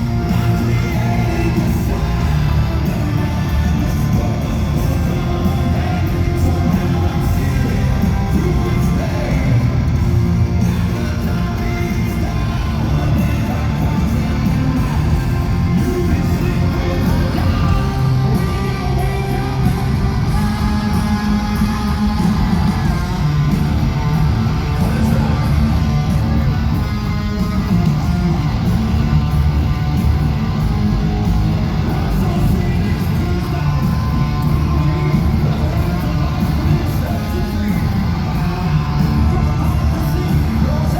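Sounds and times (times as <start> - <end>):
bass guitar: 0.0 - 40.9
distorted electric guitars: 0.0 - 40.9
drums: 0.0 - 40.9
singer's voice: 0.0 - 40.9.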